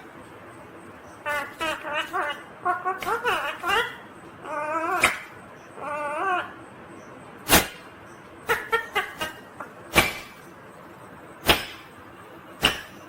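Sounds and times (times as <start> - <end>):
parakeet chirps: 1.0 - 10.5
parakeet squawks: 1.1 - 6.6, 7.5 - 10.4.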